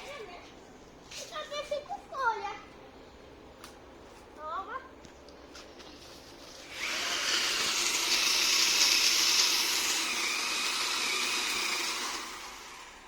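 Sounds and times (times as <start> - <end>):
chainsaw running: 6.6 - 13.0.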